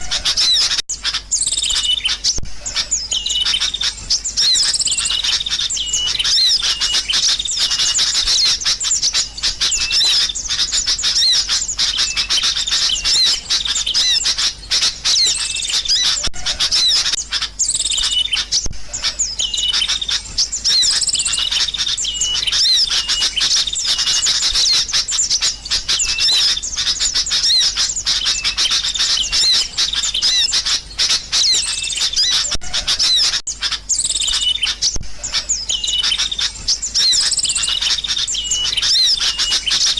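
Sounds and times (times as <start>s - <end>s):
birds chirping and warbling: 0.0s - 39.9s.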